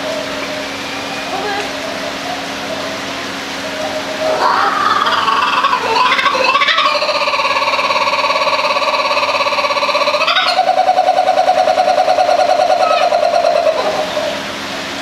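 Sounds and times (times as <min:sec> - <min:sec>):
kookaburra laughing call: 0:03.6 - 0:14.6.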